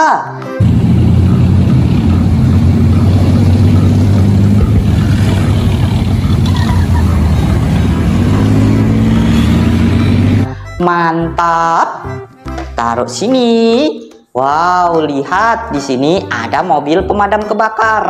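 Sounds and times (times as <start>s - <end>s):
tank engine rumbling: 0.6s - 10.6s.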